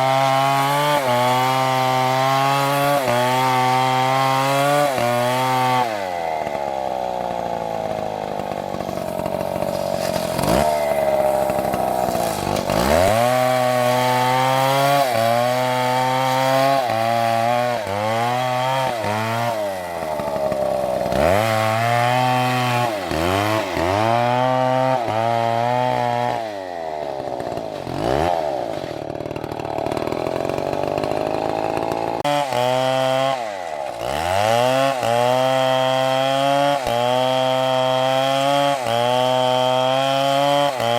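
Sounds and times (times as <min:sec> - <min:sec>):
chainsaw running at high revs: 0:00.0 - 0:40.9.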